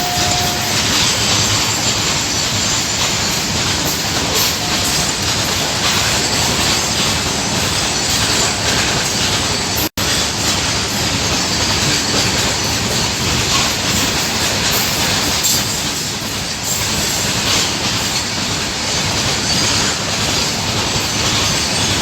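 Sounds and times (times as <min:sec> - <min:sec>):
freight train rumbling past: 0:00.0 - 0:22.0.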